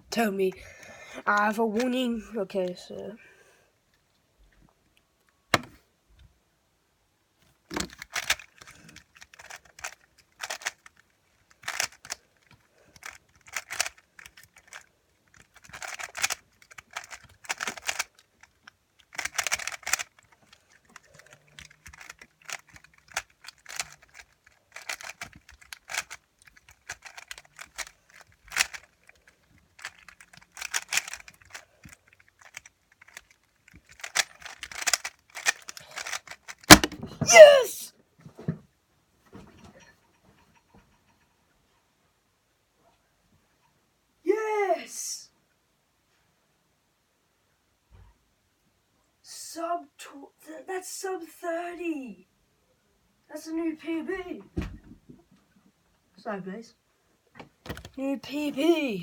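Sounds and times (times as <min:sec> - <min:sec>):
rapid plastic clacking of cube: 0:07.5 - 0:37.1, 0:57.6 - 0:58.0.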